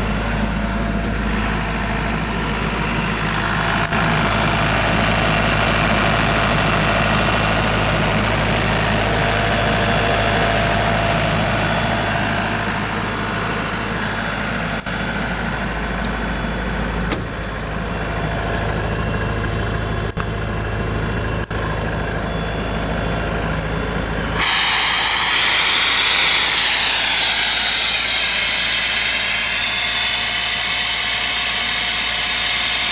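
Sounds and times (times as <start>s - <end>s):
air compressor engine rumble: 0.0s - 32.9s
falling whistle: 24.3s - 32.9s
compressed air rushing out: 24.4s - 32.9s.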